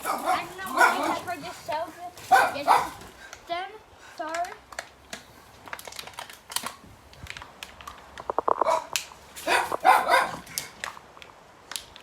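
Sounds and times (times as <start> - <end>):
dog barking: 0.0 - 1.4, 2.2 - 3.0, 8.6 - 10.4.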